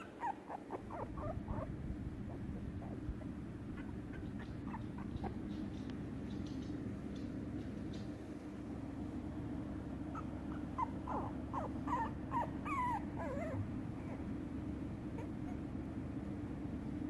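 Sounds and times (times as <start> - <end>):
puppy whimpering: 0.0 - 5.9, 10.0 - 16.2
steady low hum: 0.0 - 17.0.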